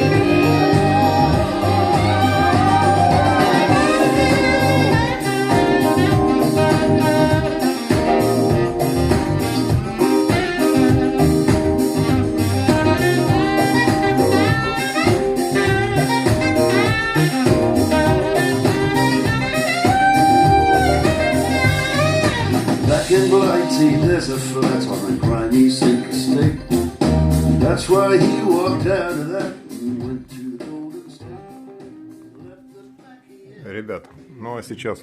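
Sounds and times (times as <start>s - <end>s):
gliding lead notes: 0.0s - 24.0s
pop-rock song over loudspeakers: 0.0s - 32.7s
steady drumbeat: 0.0s - 33.2s.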